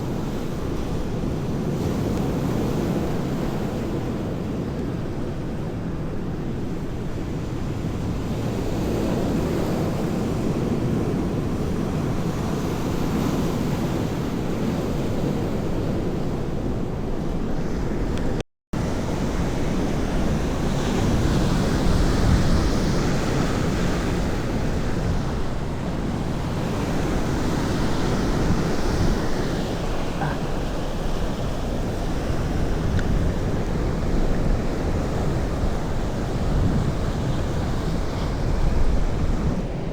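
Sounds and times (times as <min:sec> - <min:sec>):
wind rumbling on microphone: 0:00.0 - 0:39.9
sea waves washing on shore: 0:08.5 - 0:39.9.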